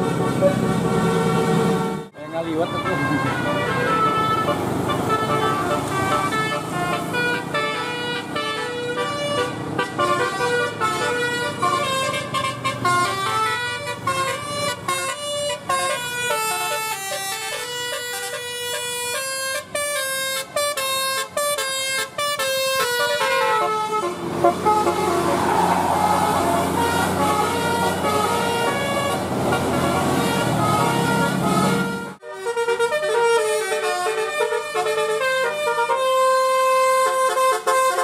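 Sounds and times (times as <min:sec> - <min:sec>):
musical bus horn playing a tune: 0:00.0 - 0:38.0.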